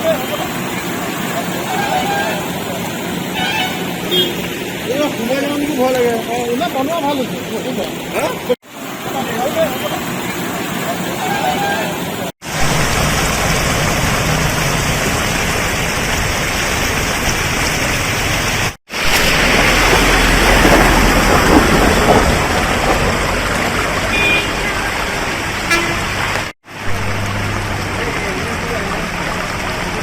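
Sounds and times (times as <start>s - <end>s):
floodwater rushing: 0.0s - 30.0s
short high horn toot: 25.7s - 26.1s.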